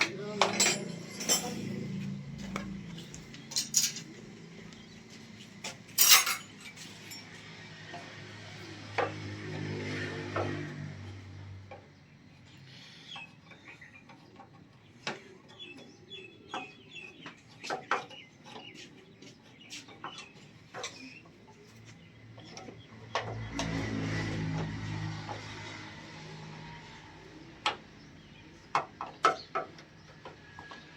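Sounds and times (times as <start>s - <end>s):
birds chirping: 0.0s - 7.3s, 11.7s - 23.6s, 27.0s - 30.9s
metal clinks and taps: 2.4s - 4.1s, 5.6s - 7.4s.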